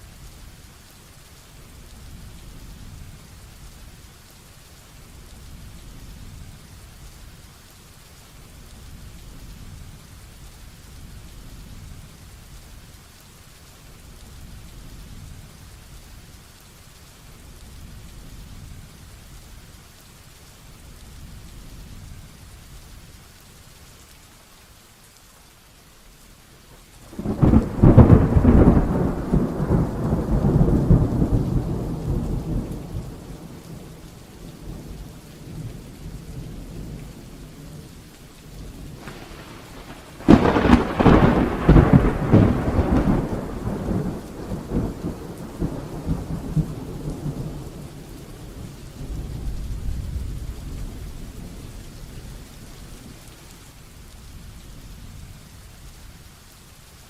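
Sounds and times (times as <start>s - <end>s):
heavy rain: 0.0s - 57.0s
thunder: 27.1s - 33.9s, 38.9s - 51.1s.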